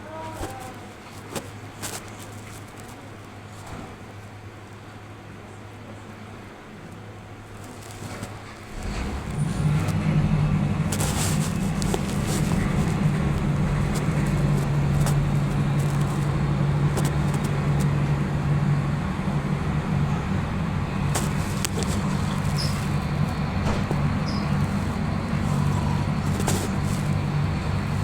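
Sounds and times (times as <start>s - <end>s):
low mechanical hum: 0.0s - 28.0s.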